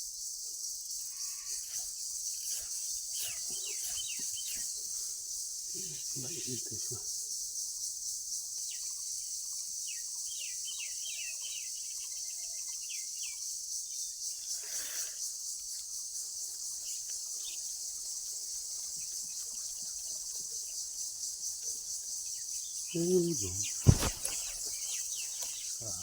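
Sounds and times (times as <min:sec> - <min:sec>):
insect chorus drone: 0:00.0 - 0:26.0
bird chirping: 0:03.0 - 0:05.1, 0:16.8 - 0:26.0
brief swish: 0:23.8 - 0:24.5.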